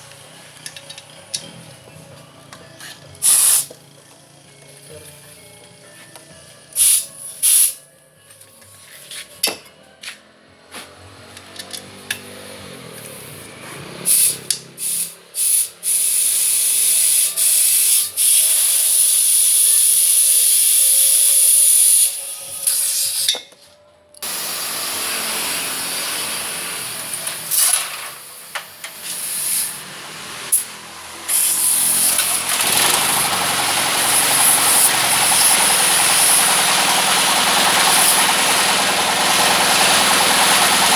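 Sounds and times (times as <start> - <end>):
compressed air hissing: 3.2 - 3.8, 6.8 - 7.8, 14.0 - 23.3, 24.2 - 29.9, 31.3 - 38.4.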